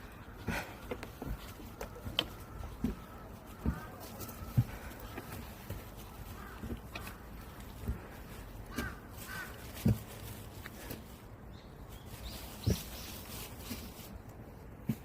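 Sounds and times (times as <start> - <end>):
footsteps on outdoor path: 0.0 - 15.0.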